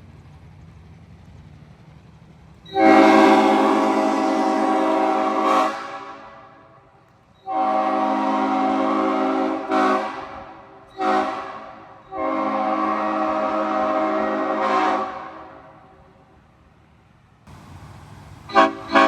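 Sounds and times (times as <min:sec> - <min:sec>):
train air horn blasts: 0:02.7 - 0:16.2, 0:17.5 - 0:19.0.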